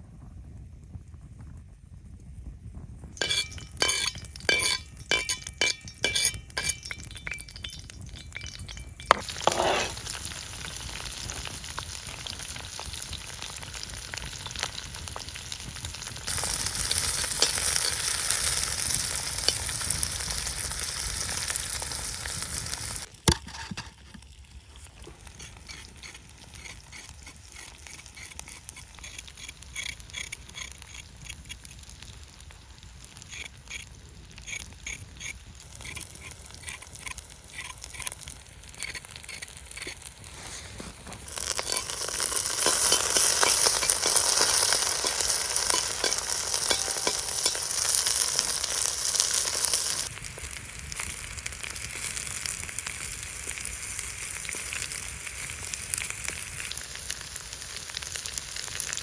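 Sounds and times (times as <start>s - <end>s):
utensil clinks and knocks: 3.2s - 9.9s, 41.4s - 47.9s
food sizzling in a pan: 3.2s - 59.0s.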